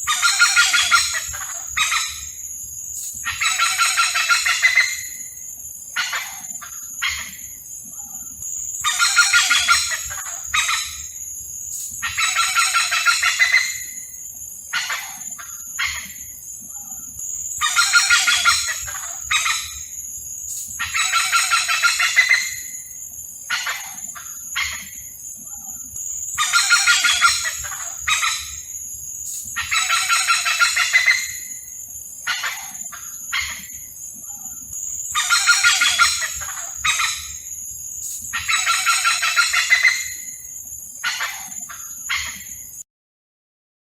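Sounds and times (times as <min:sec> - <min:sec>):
hornbills calling harshly: 0:00.0 - 0:02.3, 0:03.3 - 0:05.2, 0:08.8 - 0:11.1, 0:12.0 - 0:14.0, 0:14.7 - 0:16.1, 0:17.6 - 0:19.8, 0:20.8 - 0:22.8, 0:26.3 - 0:28.7, 0:29.6 - 0:31.5, 0:32.2 - 0:33.6, 0:35.1 - 0:37.4, 0:38.3 - 0:40.2, 0:41.0 - 0:42.4.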